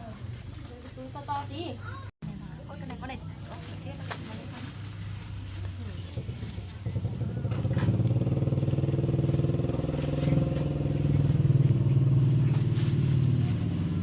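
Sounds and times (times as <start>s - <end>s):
motorbike engine running: 5.0s - 14.0s.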